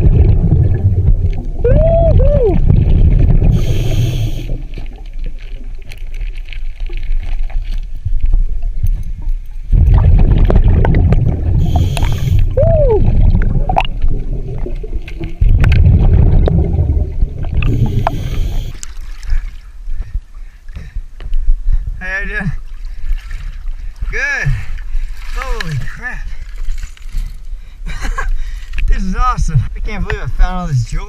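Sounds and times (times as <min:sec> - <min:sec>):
rumbling exhale bubbles: 0:00.0 - 0:08.5, 0:09.6 - 0:20.2
regulator hiss on inhale: 0:03.5 - 0:04.6, 0:11.6 - 0:12.5, 0:17.7 - 0:18.8.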